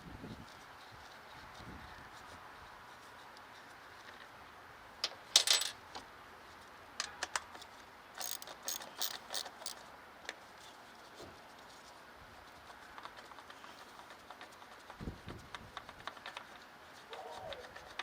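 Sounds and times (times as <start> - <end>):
small metal parts clinking: 5.0 - 5.8, 8.2 - 9.8.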